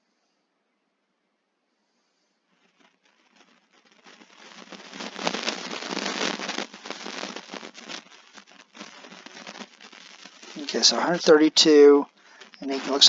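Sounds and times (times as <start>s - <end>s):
dense rapid crackling: 2.4s - 13.0s.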